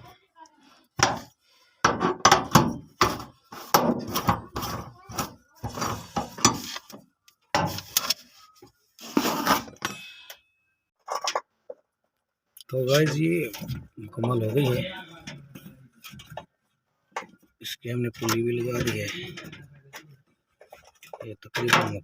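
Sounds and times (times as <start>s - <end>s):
tools knocking and clanking on metal: 1.0s - 7.9s, 18.2s - 22.0s.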